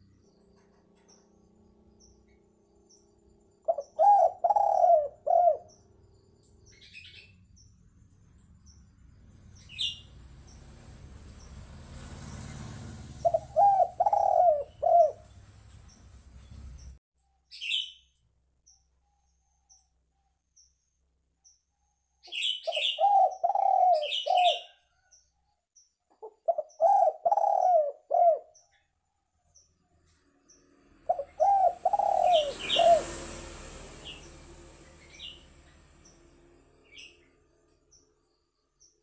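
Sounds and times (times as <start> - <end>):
small bird chirping: 0.0 - 33.1, 34.0 - 39.0
dove cooing: 3.6 - 5.7, 13.2 - 15.3, 22.7 - 24.8, 26.2 - 28.6, 31.1 - 33.3.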